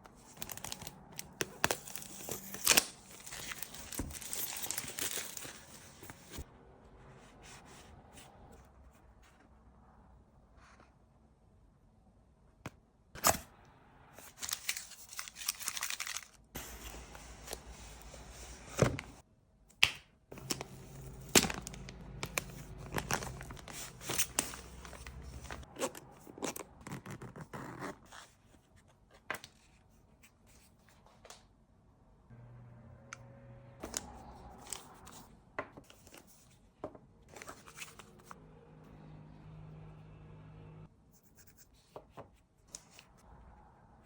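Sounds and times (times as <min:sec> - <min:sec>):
packaging tearing and rustling: 0:00.2 - 0:06.4, 0:14.2 - 0:17.7, 0:20.3 - 0:27.1.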